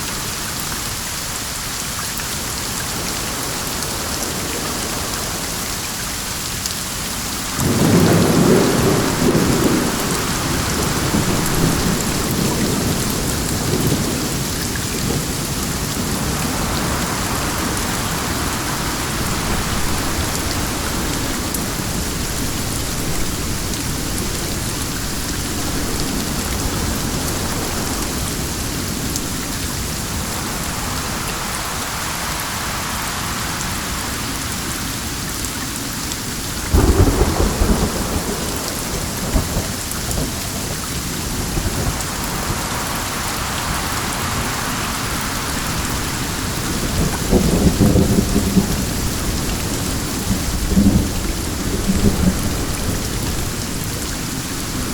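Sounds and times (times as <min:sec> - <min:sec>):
heavy rain: 0:00.0 - 0:54.9
thunder rumbling: 0:07.6 - 0:32.0, 0:36.6 - 0:43.2, 0:44.4 - 0:54.9.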